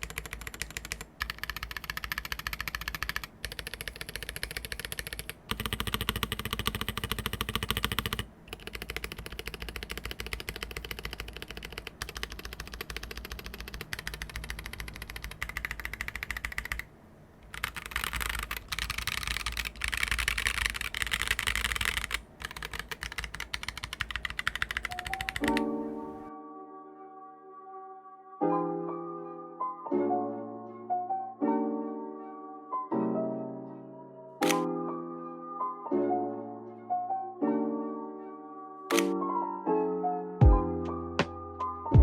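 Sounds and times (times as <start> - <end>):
fast mechanical keyboard typing: 0.0 - 25.6.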